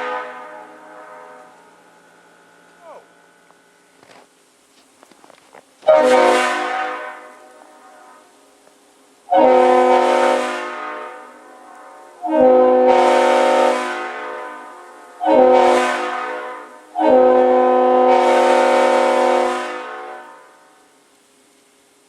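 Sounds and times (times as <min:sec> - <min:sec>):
locomotive air horn blasts: 0:00.0 - 0:03.0, 0:05.8 - 0:08.4, 0:09.3 - 0:20.7.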